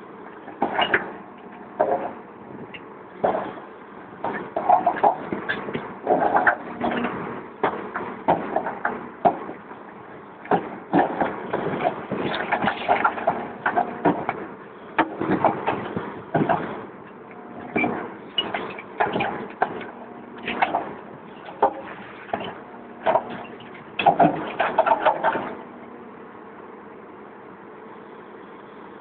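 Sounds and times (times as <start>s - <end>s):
excavator diesel engine running: 0.0s - 29.0s
concrete block cracking and clattering: 17.8s - 25.6s.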